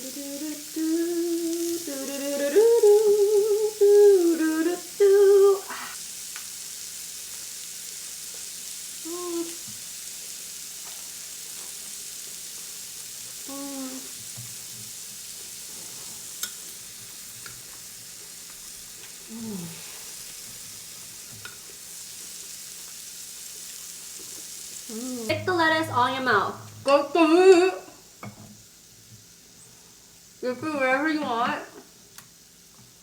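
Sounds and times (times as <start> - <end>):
person humming: 0.0 - 6.0, 9.0 - 9.7, 13.4 - 14.2, 19.3 - 20.0, 24.9 - 28.0
meat sizzling on a grill pan: 0.0 - 33.0.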